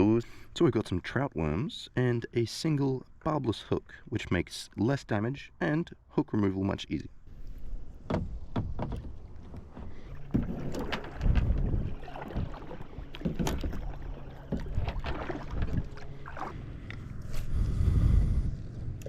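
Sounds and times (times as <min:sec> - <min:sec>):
water sounds: 0:00.0 - 0:19.0
knocks against kayak hull: 0:08.0 - 0:13.9.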